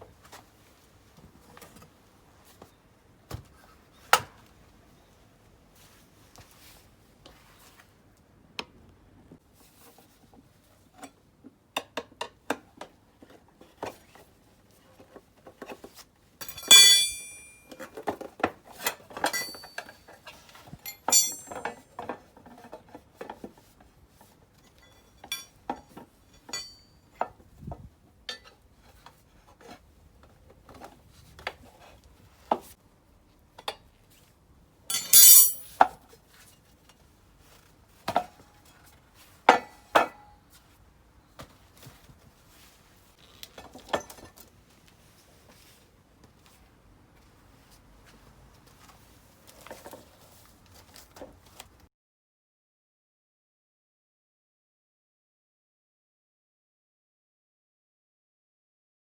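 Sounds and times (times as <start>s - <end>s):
ringing metal clanks: 16.4s - 17.7s, 19.3s - 19.8s, 20.9s - 21.7s, 24.8s - 25.6s, 26.4s - 26.8s, 34.9s - 35.7s
metallic clinks and taps: 16.4s - 17.8s, 19.2s - 20.0s, 20.8s - 21.8s, 24.8s - 26.8s, 34.9s - 35.8s.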